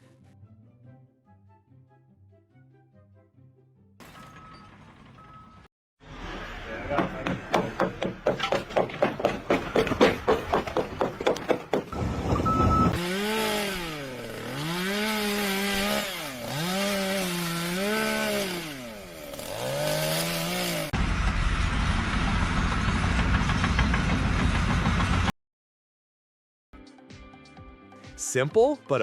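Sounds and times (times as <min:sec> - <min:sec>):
grinding or sawing noise: 0:12.0 - 0:25.3.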